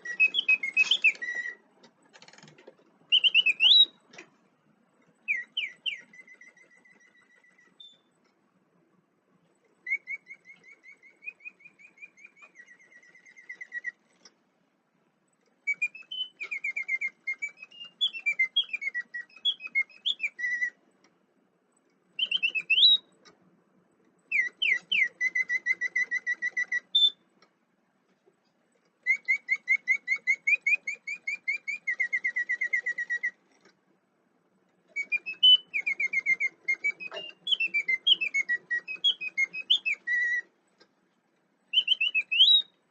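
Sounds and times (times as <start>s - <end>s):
mechanical singing bird whistling: 0.0s - 4.2s, 5.2s - 8.2s, 9.8s - 14.2s, 15.6s - 20.8s, 22.2s - 23.2s, 24.3s - 27.3s, 29.0s - 33.4s, 34.9s - 40.6s, 41.7s - 42.8s.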